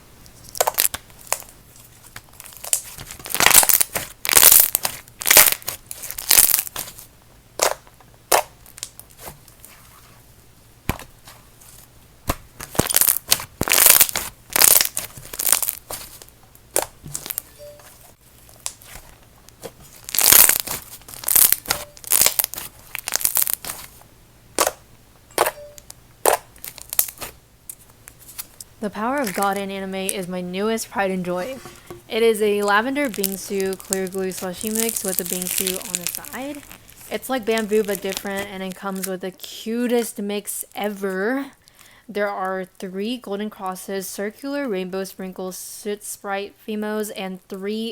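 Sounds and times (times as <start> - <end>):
slime crackling and popping: 0.4 - 9.7, 12.2 - 17.5, 18.4 - 24.0, 25.8 - 27.4, 32.5 - 39.2.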